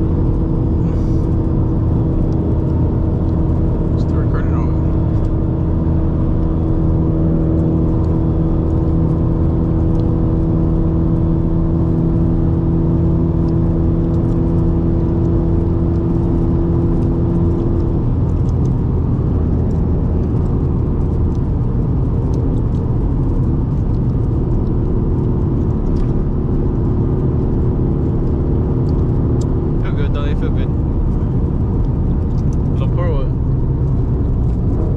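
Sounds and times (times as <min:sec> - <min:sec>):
steady pitched hum: 0:00.0 - 0:09.8
road and engine drone: 0:00.0 - 0:34.9.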